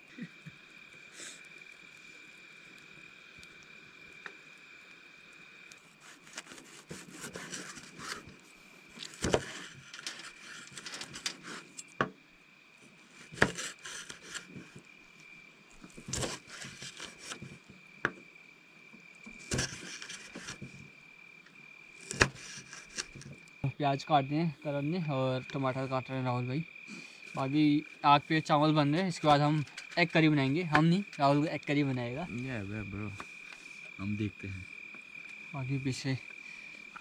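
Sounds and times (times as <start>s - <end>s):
high-pitched insect drone: 0.0s - 37.0s
knife chopping on wooden board: 13.3s - 14.4s.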